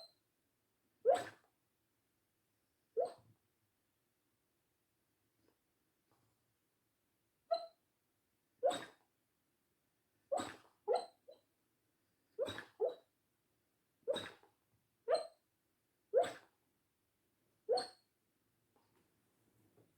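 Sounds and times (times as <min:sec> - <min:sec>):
dog woofing in sleep: 0:01.1 - 0:01.4, 0:03.0 - 0:03.3, 0:08.6 - 0:09.0, 0:10.3 - 0:11.2, 0:12.4 - 0:13.1, 0:14.1 - 0:14.4, 0:16.2 - 0:16.5, 0:17.7 - 0:18.0.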